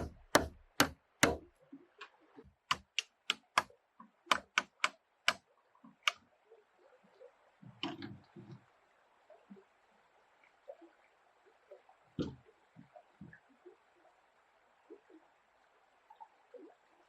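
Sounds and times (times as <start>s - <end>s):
dull thud: 0.0s - 1.4s
hammering on wood: 0.0s - 1.5s, 2.7s - 3.7s, 4.3s - 5.4s.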